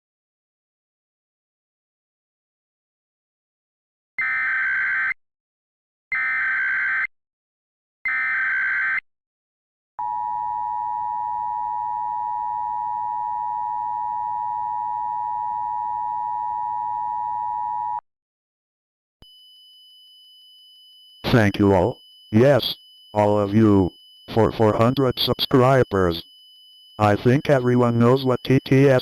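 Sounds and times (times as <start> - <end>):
two-tone attention signal: 21.2 - 26.3.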